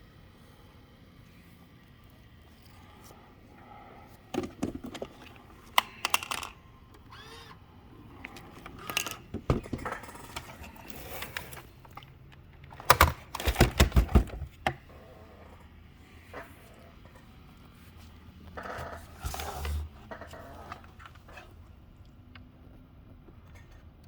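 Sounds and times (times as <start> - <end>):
handling clicks and knocks: 4.3 - 6.6, 11.3 - 14.8.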